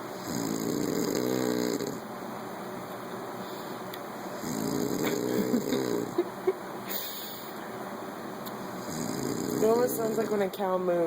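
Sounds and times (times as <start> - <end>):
man snoring: 0.2 - 2.0, 4.4 - 6.1, 8.9 - 9.8.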